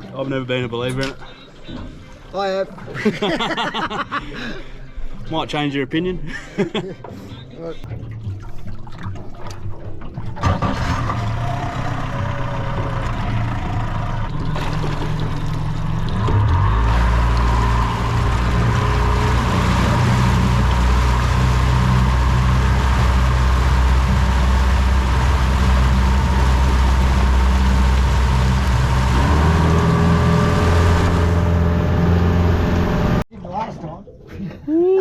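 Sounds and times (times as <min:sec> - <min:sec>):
motorboat engine running: 0:07.9 - 0:33.2
rush of wind and water: 0:15.2 - 0:33.1.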